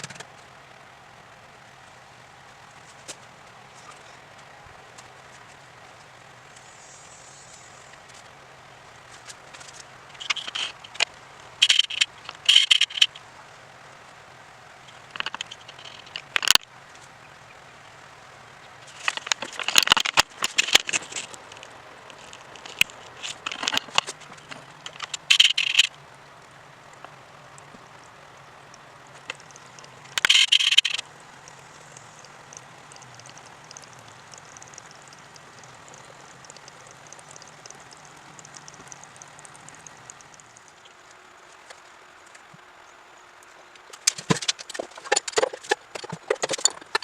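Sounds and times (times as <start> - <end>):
faint low hum: 0.0 - 47.0
sharp clicks: 10.2 - 13.2, 14.9 - 16.6, 18.8 - 26.0, 27.0 - 41.0
scraping and rattling of tools: 43.9 - 47.0.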